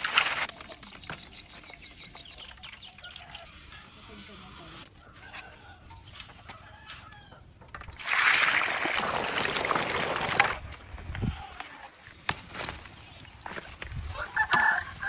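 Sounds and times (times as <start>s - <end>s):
chicken calling harshly: 14.1s - 15.0s.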